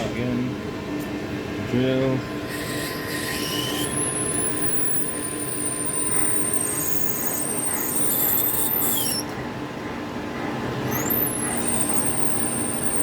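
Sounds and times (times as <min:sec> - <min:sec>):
metal lathe running: 0:02.3 - 0:13.0
high squeal of drill bit: 0:02.5 - 0:09.3, 0:10.9 - 0:13.0.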